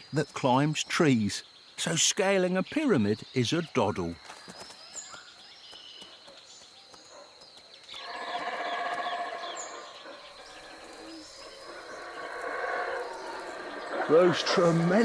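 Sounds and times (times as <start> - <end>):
birds chirping: 0.0 - 15.0
howler monkeys roaring: 8.0 - 15.0.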